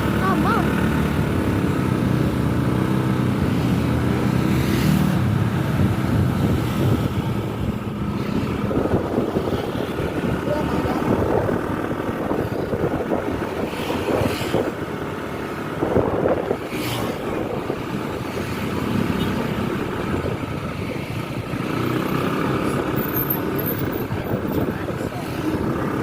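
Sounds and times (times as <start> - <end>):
engine and road rumble: 0.0 - 26.0.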